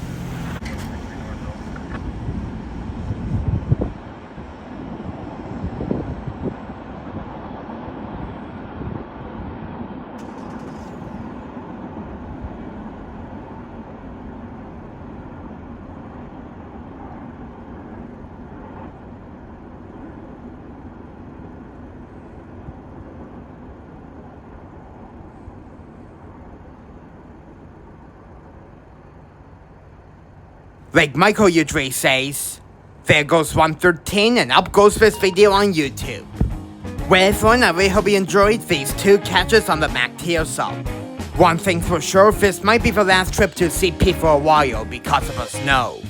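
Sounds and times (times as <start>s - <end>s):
freight train rolling on rails: 0.0s - 34.8s.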